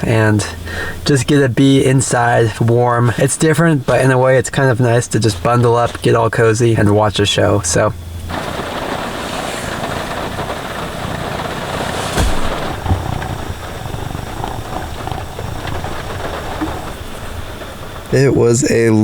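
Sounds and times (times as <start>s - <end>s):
heavy rain drumming on car roof: 4.8s - 19.0s
low hum: 8.0s - 18.1s
brief knocks: 11.9s - 14.0s.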